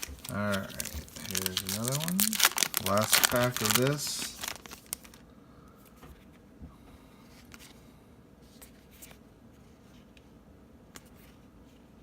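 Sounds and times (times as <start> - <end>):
trading cards rustling: 0.0 - 5.2.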